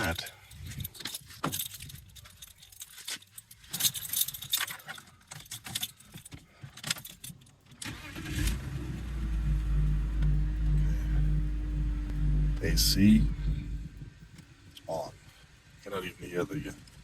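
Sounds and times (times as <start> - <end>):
keys jangling: 0.5 - 7.8
car engine starting and idling: 7.8 - 15.0.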